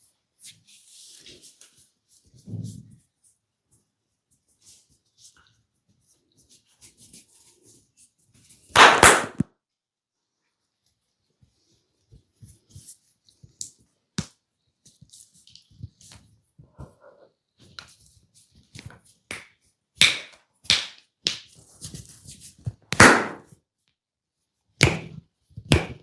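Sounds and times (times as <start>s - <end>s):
hand slap: 8.8s - 9.5s, 22.9s - 23.5s.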